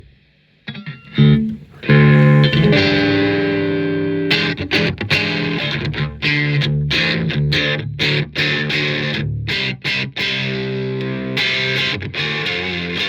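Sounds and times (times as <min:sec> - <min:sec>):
electric guitar chords: 0:01.1 - 0:13.0.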